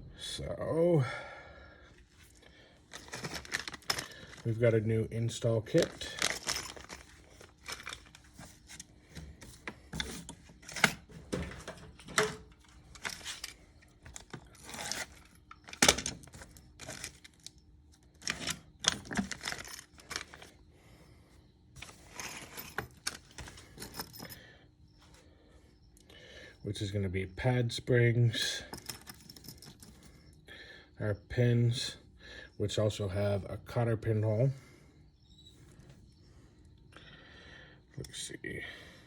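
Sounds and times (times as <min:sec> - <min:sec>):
plastic rustling and tearing: 0:02.9 - 0:04.5, 0:05.8 - 0:08.3, 0:18.2 - 0:20.5
small metal parts clinking: 0:02.9 - 0:04.6, 0:05.4 - 0:20.5, 0:21.8 - 0:24.4, 0:28.6 - 0:30.1.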